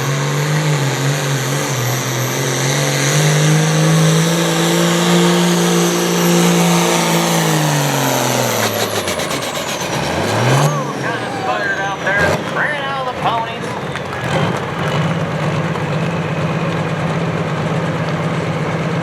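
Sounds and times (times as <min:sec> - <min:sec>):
tractor diesel engine under load: 0:00.0 - 0:19.0.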